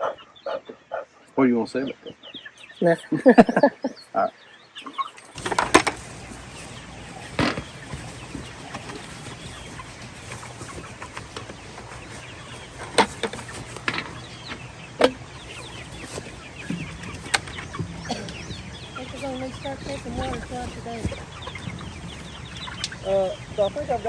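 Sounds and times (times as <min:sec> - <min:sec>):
chickens clucking: 0:01.8 - 0:24.0
steady low hum: 0:05.3 - 0:24.0.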